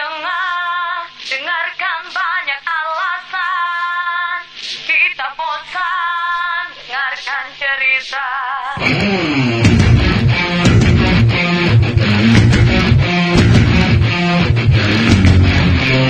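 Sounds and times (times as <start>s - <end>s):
woman singing with vibrato: 0.0s - 8.9s.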